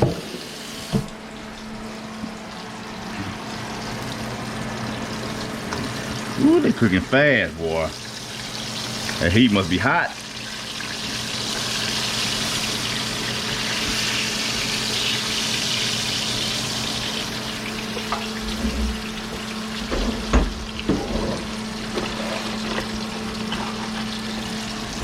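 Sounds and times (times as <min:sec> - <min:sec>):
fish fillets sizzling in oil: 0:07.8 - 0:18.4.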